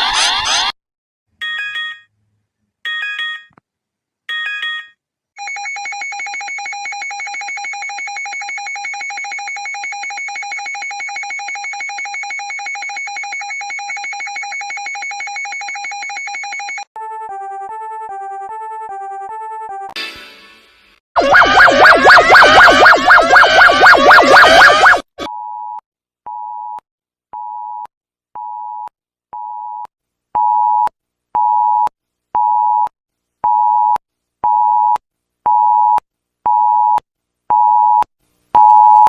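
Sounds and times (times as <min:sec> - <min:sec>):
alternating two-note alarm: 0:21.2 - 0:25.0
sweeping alarm: 0:21.2 - 0:25.0
rapidly pulsing alarm tone: 0:21.2 - 0:25.1.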